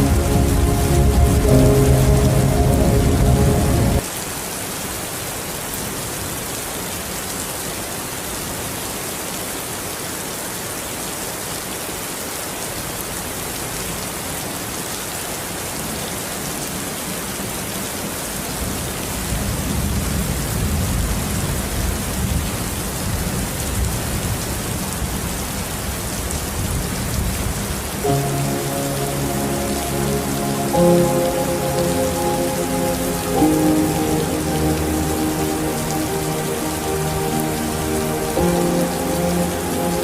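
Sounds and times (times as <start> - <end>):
soft music with held notes: 0.0 - 4.0, 28.0 - 40.0
steady rain falling: 0.0 - 40.0.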